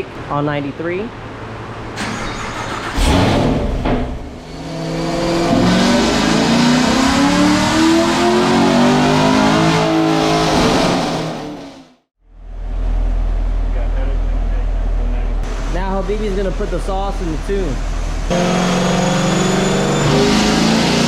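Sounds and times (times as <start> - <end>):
car engine full-throttle revving: 2.5 - 12.0, 17.8 - 21.0.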